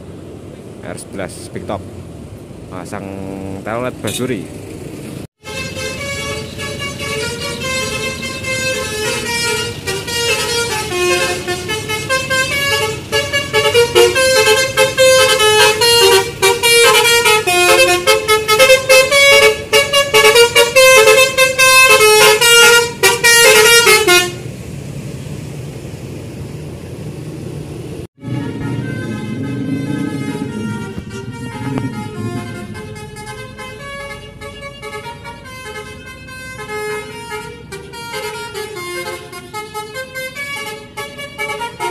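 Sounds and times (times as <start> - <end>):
bus horn playing a tune: 5.4 - 24.5, 28.2 - 41.9.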